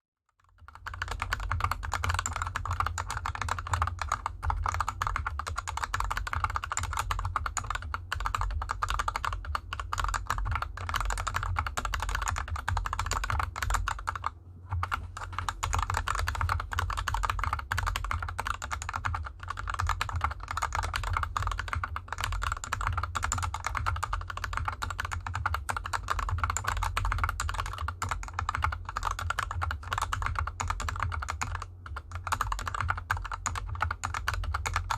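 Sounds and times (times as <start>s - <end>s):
typing on mechanical keyboard: 0.3s - 34.9s.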